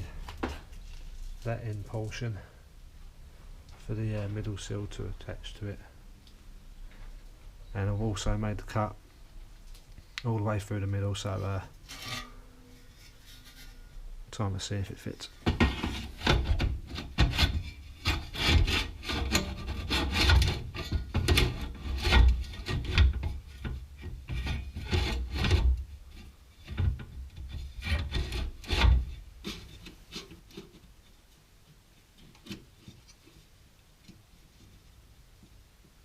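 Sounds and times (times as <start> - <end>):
metal panel scraping and knocking: 15.4 - 25.9, 26.6 - 30.8.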